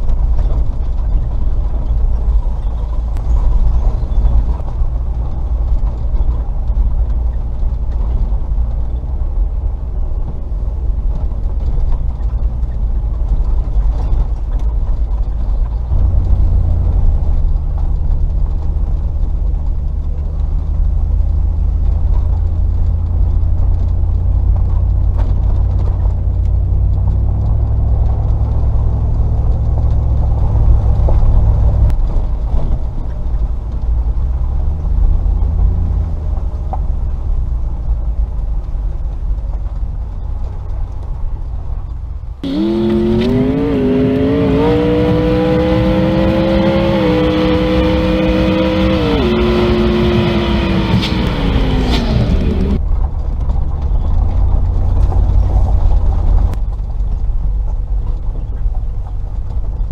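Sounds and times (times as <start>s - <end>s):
vehicle engine driving: 0.0s - 59.9s.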